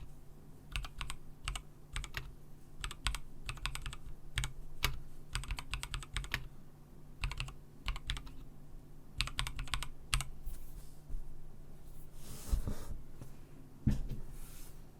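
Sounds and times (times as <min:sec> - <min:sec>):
mechanical keyboard typing: 0:00.7 - 0:06.5, 0:07.2 - 0:08.4, 0:09.2 - 0:10.3.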